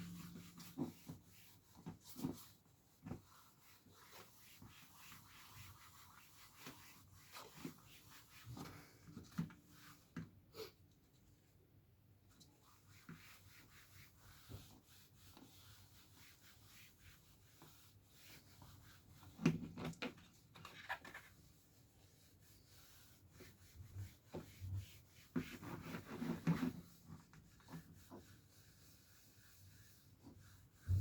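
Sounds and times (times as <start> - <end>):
cloth rubbing plastic: 0.0 - 10.1, 20.6 - 31.0.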